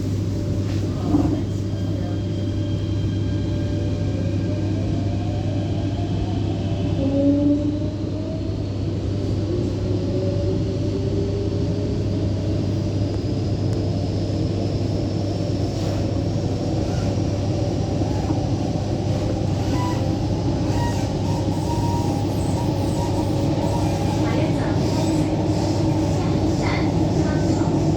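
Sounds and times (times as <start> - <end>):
train wheels rumbling on track: 8.1 - 27.9.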